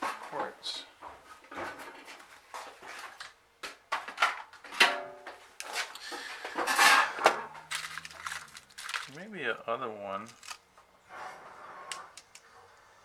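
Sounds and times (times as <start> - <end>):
rustling rummage: 5.4 - 12.5
small parts clicking and clattering: 5.6 - 10.7, 11.9 - 12.5.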